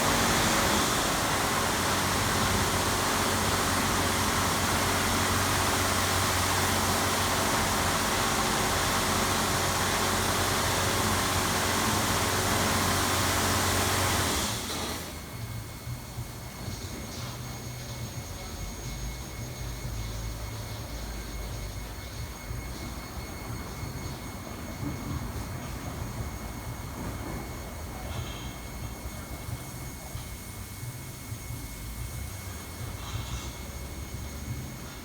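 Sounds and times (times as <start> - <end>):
car wash machine rushing: 0.0 - 35.0.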